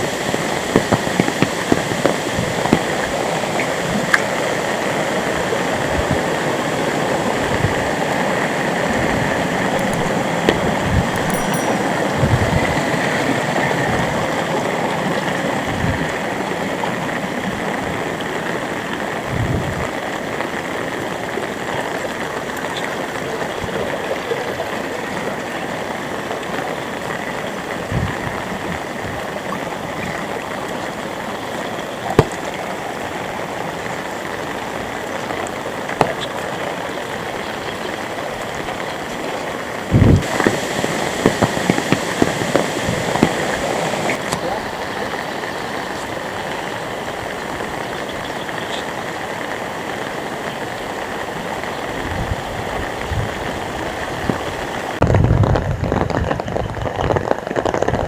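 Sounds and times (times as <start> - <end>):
heavy rain pouring: 0.0 - 11.2, 11.9 - 58.0.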